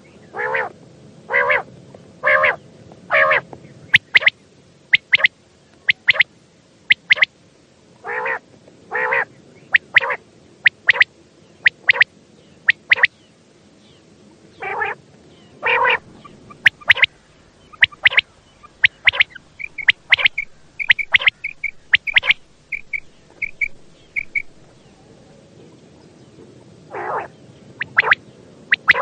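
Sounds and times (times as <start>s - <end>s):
quail calling: 0.3s - 0.7s, 1.3s - 4.3s, 4.9s - 6.3s, 6.9s - 7.3s, 8.0s - 12.1s, 12.7s - 13.1s, 14.6s - 15.0s, 15.6s - 24.9s, 26.9s - 29.0s.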